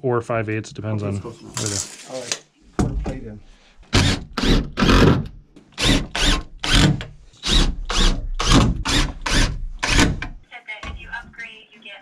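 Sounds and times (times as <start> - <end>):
power drill driving screws into wood: 3.9 - 10.3.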